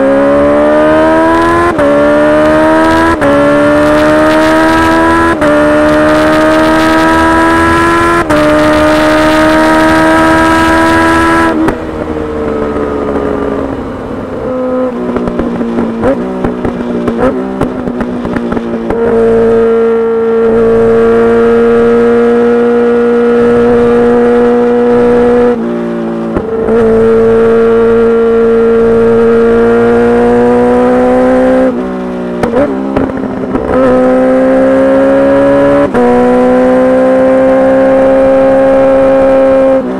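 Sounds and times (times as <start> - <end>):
motorcycle engine revving: 0.0 - 39.9
exhaust crackling: 4.8 - 36.5.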